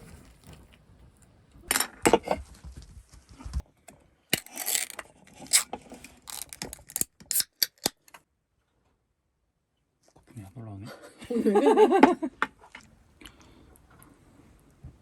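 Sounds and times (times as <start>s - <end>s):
short scraping noises: 4.4s - 7.9s.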